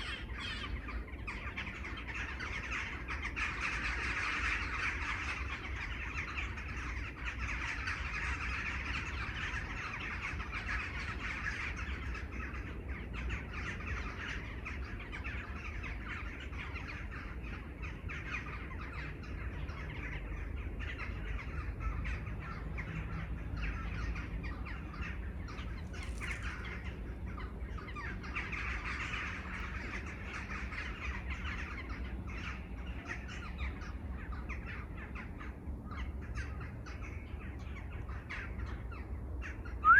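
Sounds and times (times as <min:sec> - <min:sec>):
crows cawing: 0:00.0 - 0:12.8, 0:19.7 - 0:37.2
small birds chirping: 0:00.0 - 0:39.9.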